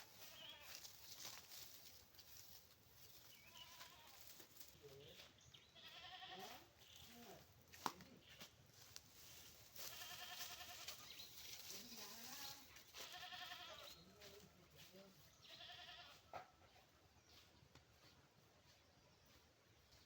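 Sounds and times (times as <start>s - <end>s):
goat bleating faintly: 5.8s - 7.4s, 9.8s - 11.0s, 11.8s - 14.0s, 15.5s - 16.5s.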